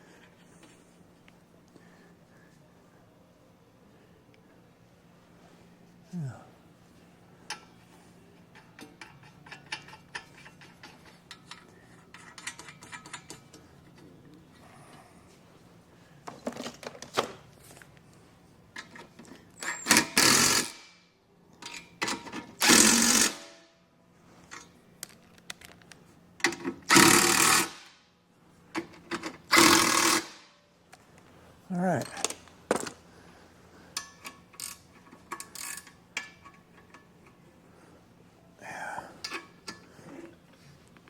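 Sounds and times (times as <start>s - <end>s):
power tool tightening nuts: 19.6s - 20.8s, 22.6s - 23.5s, 26.8s - 27.9s, 29.5s - 30.4s.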